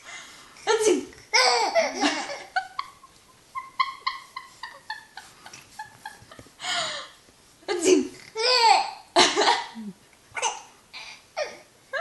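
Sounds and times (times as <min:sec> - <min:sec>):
baby laughing: 0:01.3 - 0:02.6.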